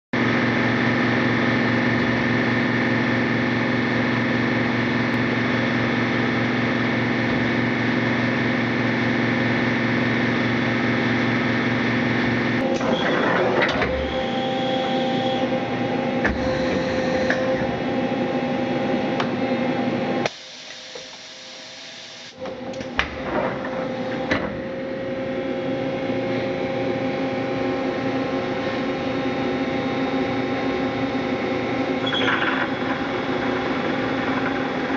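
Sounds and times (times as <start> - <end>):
machine humming: 0.2 - 34.9
machine clatters and clicks: 32.0 - 34.9.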